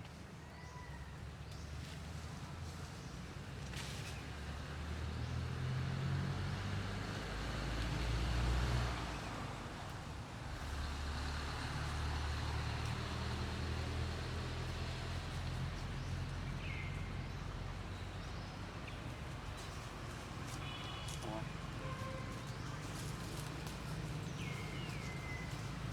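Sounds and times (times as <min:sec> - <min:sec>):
vehicle engine rumbling: 0:05.2 - 0:25.9.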